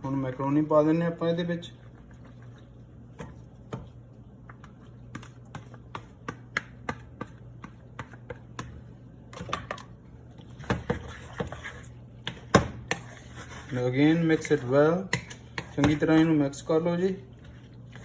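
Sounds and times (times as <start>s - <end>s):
low steady hum: 0.0s - 18.0s
utensil clicking and tapping bowl: 3.2s - 9.9s, 14.4s - 16.3s.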